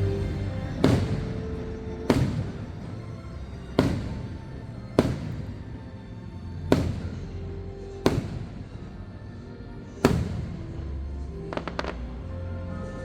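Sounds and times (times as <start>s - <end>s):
fireworks booming: 0.0s - 6.0s, 6.6s - 9.0s, 10.0s - 10.8s, 11.5s - 12.2s
fireworks crackling pops: 0.0s - 6.0s, 6.6s - 9.0s, 10.0s - 10.8s, 11.5s - 12.2s
music playing: 0.0s - 13.0s.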